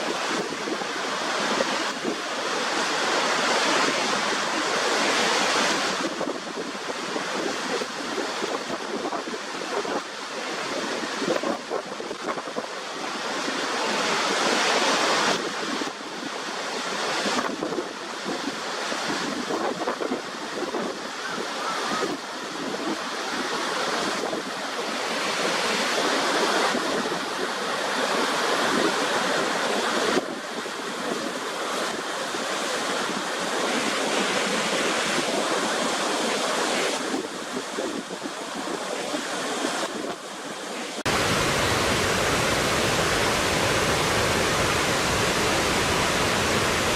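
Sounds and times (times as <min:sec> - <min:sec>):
waterfall roaring: 0:38.9 - 0:46.9.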